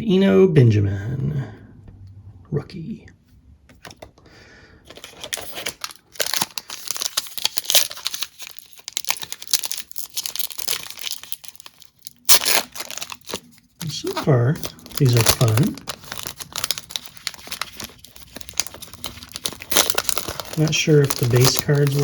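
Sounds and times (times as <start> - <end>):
foil wrapper crinkling: 4.9 - 22.0
wrapper ripping: 4.9 - 22.0.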